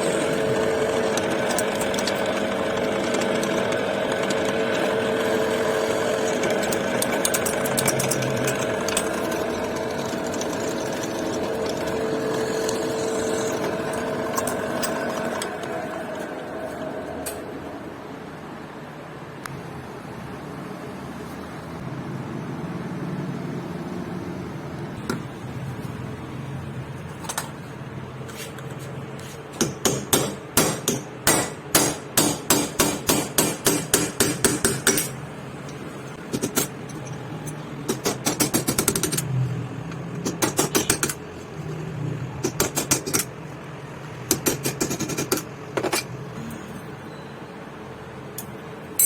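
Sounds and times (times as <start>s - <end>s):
low workshop hum: 0.0s - 49.0s
hammer striking metal: 29.6s - 35.2s.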